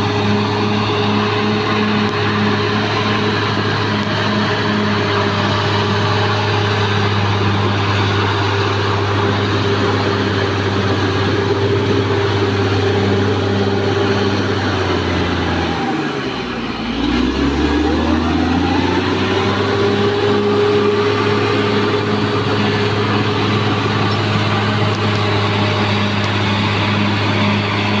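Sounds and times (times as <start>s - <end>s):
bulldozer diesel engine running: 0.0s - 28.0s.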